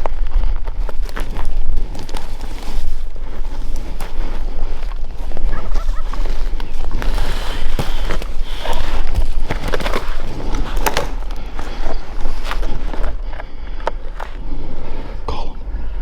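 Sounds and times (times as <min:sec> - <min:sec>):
steady low rumble: 0:00.0 - 0:16.0
turkey gobbling: 0:05.4 - 0:07.2.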